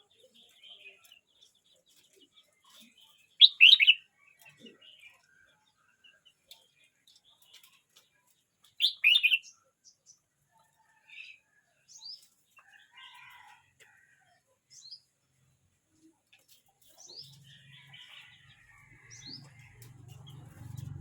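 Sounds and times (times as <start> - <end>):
bird singing whistled notes: 3.4 - 4.0, 8.8 - 9.5.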